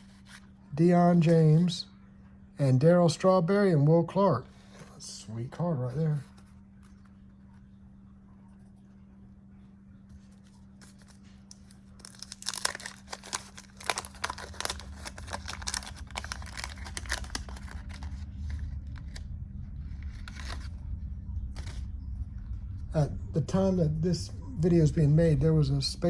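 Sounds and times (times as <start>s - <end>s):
steady low hum: 0.0s - 26.0s
wax paper wrapper tearing: 10.8s - 19.3s, 20.0s - 20.8s.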